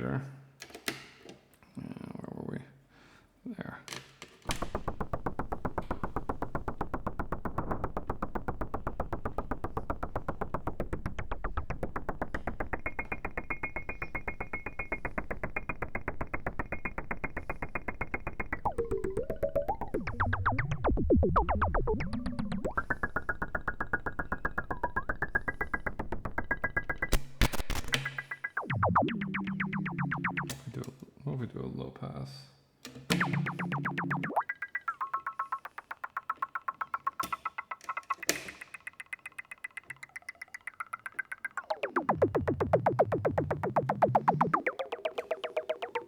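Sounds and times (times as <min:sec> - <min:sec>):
synthesizer noise hits: 0:04.5 - 0:30.7, 0:33.1 - 0:38.3, 0:41.3 - 0:46.0
synth pitch sweep: 0:04.6 - 0:30.7, 0:33.1 - 0:46.0
high steady synth tone: 0:05.2 - 0:30.6, 0:33.1 - 0:46.0.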